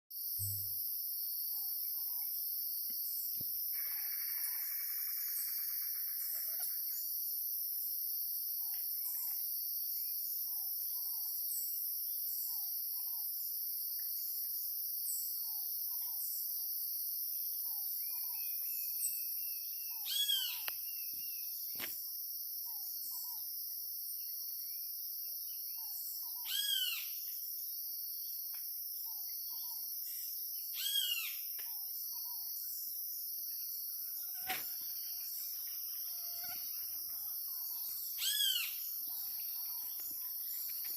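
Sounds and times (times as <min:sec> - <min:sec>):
insects chorus: 0:00.2 - 0:40.9
ringing arched bird calls: 0:03.7 - 0:07.0, 0:19.9 - 0:20.7, 0:26.4 - 0:27.1, 0:30.8 - 0:31.4, 0:36.3 - 0:40.9
birds calling: 0:37.2 - 0:40.9.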